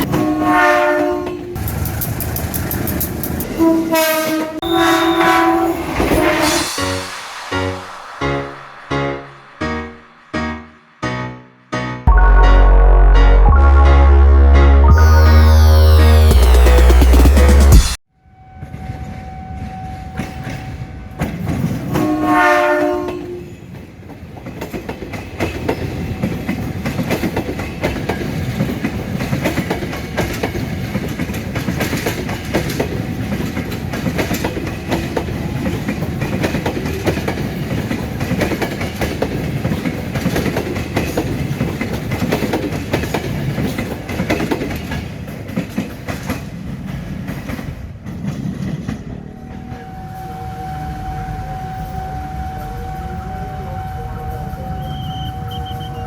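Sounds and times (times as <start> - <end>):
train horn: 0.0 - 1.6, 3.6 - 7.1, 21.9 - 23.5, 49.6 - 56.0
train rumble and wheel clatter: 0.0 - 10.9, 18.6 - 56.0.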